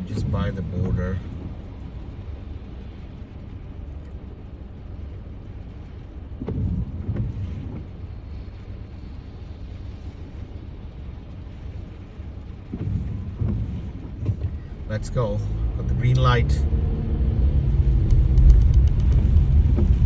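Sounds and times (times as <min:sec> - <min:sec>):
louder low sound: 0:14.7 - 0:20.0
car engine idling: 0:17.9 - 0:20.0.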